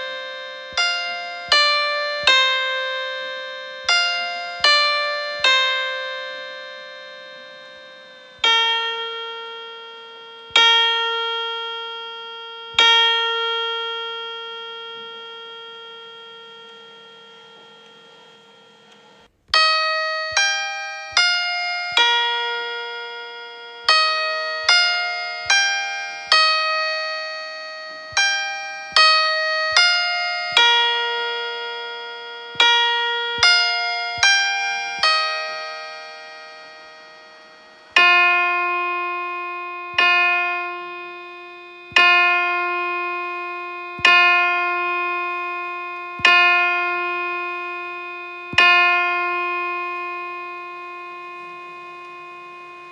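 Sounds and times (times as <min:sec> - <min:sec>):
piano chiming tune: 0:00.0 - 0:52.9.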